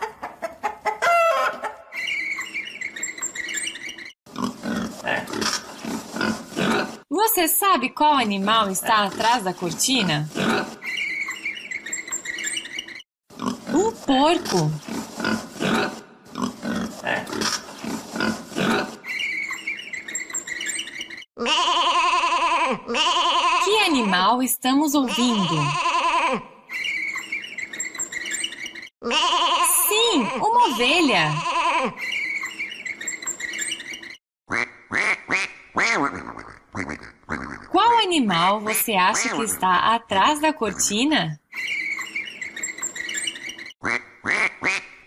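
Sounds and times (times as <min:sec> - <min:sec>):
chickens clucking: 0:00.0 - 0:02.6
faint high-pitched chirping: 0:02.0 - 0:04.1, 0:26.8 - 0:28.8, 0:32.1 - 0:34.2, 0:41.6 - 0:43.7
pig grunting: 0:04.3 - 0:07.0, 0:10.3 - 0:10.8, 0:13.4 - 0:19.0.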